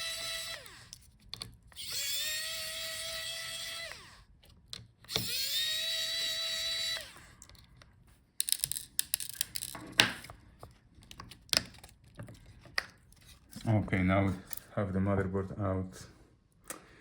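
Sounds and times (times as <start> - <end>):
electric screwdriver whining: 0.0 - 1.0, 1.7 - 4.3, 5.0 - 7.5
small parts clicking and knocking: 7.4 - 10.3.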